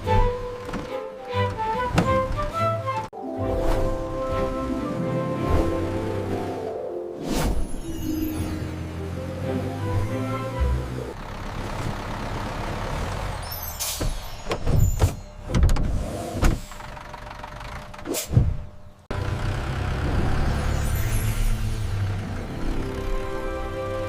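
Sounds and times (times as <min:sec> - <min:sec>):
bus engine rumble: 0:00.0 - 0:06.8, 0:07.4 - 0:24.0
music: 0:00.0 - 0:11.2, 0:20.6 - 0:24.0.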